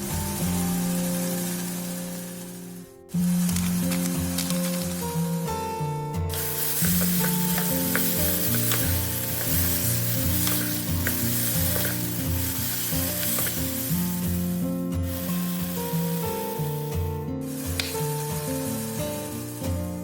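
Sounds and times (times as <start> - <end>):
background music: 0.0 - 20.0
food sizzling in hot oil: 0.0 - 20.0
utensil stirring clicks: 3.4 - 5.2, 6.3 - 20.0.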